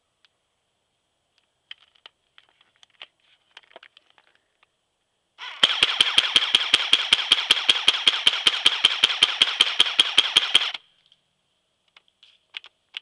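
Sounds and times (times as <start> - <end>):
airsoft gun firing full auto: 5.4 - 10.8.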